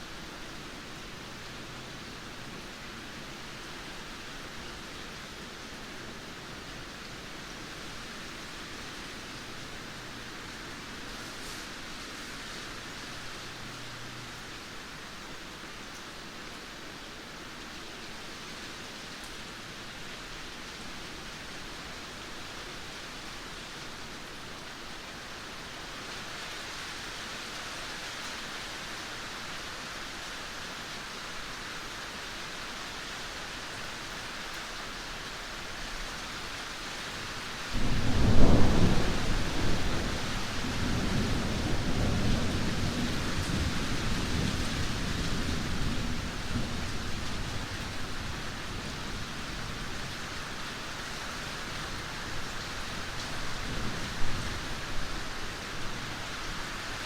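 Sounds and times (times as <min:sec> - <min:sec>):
heavy rain: 0:00.0 - 0:57.0
thunderclap rumbling: 0:37.8 - 0:47.1.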